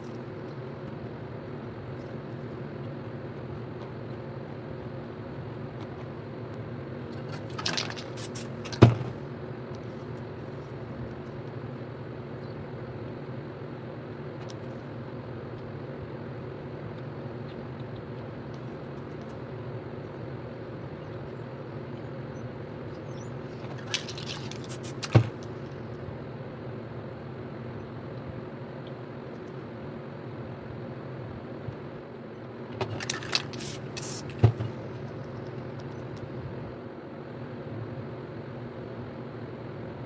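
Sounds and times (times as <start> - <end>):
steady low hum: 0.0 - 40.0
spray paint can hissing: 8.0 - 8.6, 24.5 - 25.1, 33.1 - 34.5.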